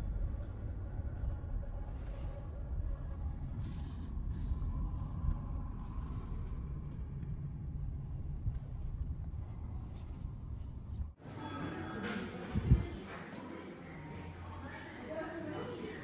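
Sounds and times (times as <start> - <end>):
low outdoor ambient rumble: 0.0 - 11.2.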